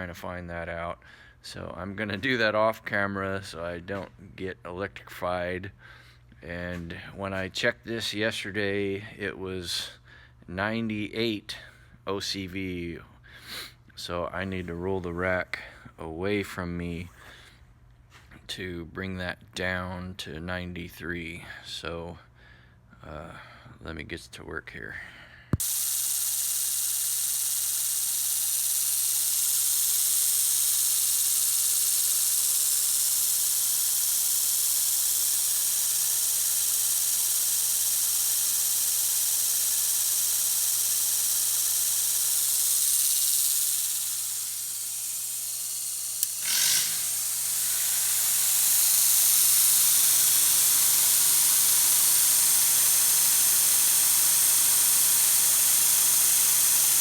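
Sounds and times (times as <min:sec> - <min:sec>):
strong hiss: 0:25.6 - 0:57.0
welder engine running: 0:25.6 - 0:57.0.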